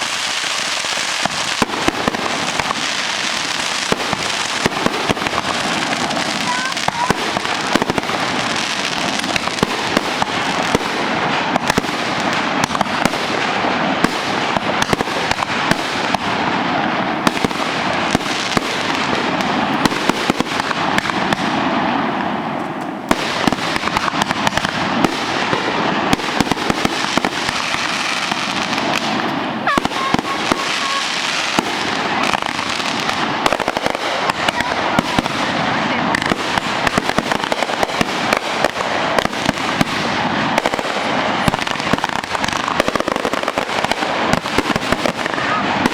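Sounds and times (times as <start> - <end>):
fireworks bangs and crackling: 0.0 - 45.9.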